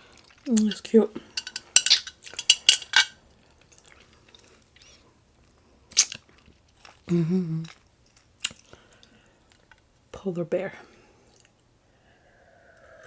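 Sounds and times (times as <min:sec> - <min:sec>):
person humming: 0:07.1 - 0:07.7.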